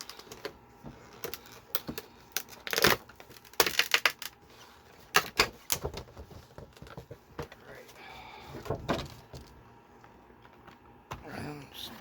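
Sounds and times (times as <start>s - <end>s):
plastic and card crinkling and tearing: 0.0s - 6.0s.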